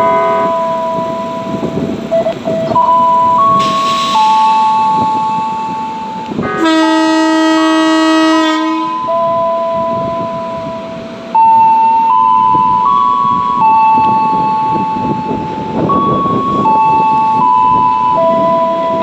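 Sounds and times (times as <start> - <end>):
harsh horn blast: 0.0 - 9.2
train horn playing slow tune: 0.0 - 11.2.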